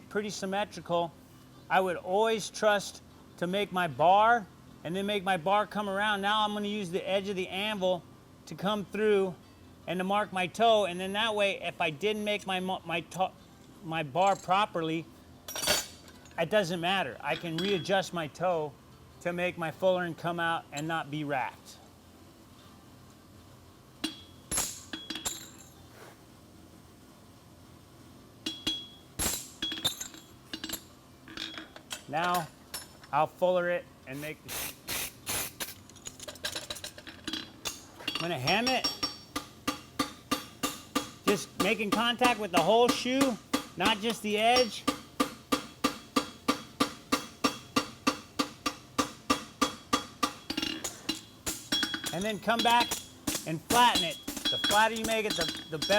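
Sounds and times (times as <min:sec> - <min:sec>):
hammer striking anvil: 0:38.1 - 0:55.9.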